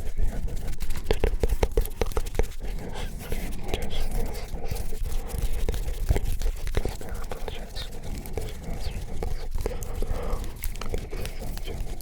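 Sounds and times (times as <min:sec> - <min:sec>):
hands rubbing: 0:00.0 - 0:12.0
person whispering: 0:00.0 - 0:12.0.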